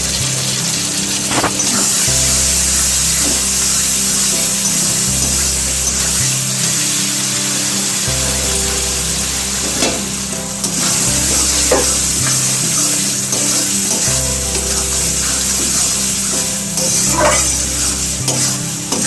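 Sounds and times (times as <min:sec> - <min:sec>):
paste sizzling in oil: 0:00.4 - 0:08.0, 0:09.1 - 0:19.0
spatula scraping pan: 0:16.8 - 0:19.0.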